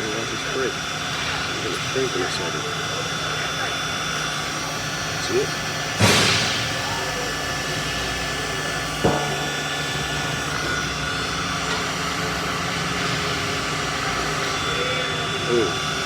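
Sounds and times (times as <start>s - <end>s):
heat gun blowing: 0.7s - 16.0s.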